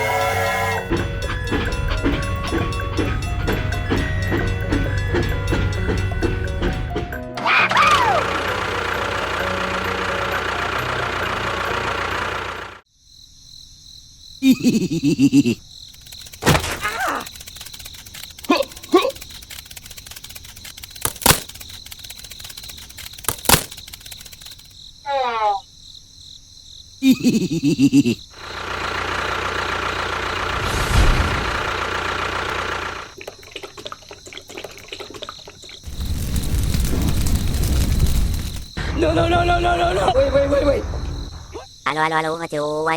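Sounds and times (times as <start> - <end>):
small motor running: 7.8 - 12.8, 15.9 - 24.8, 28.4 - 33.2
sharp click: 15.9 - 24.8.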